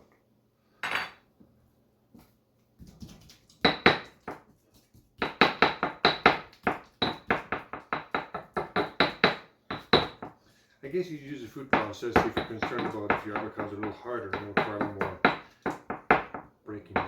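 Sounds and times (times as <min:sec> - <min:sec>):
pestle pounding in mortar: 0:03.0 - 0:04.5, 0:05.2 - 0:10.4, 0:11.7 - 0:17.0.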